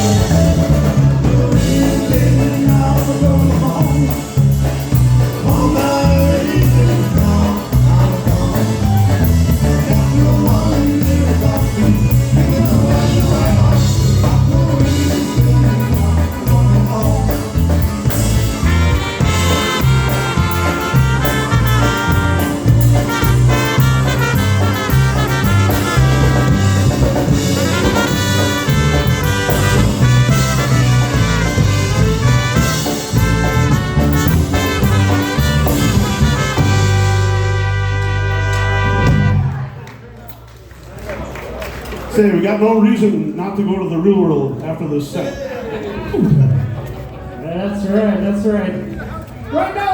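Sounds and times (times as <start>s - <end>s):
brass playing the tune: 0.0s - 39.8s
polka band playing: 0.0s - 39.9s.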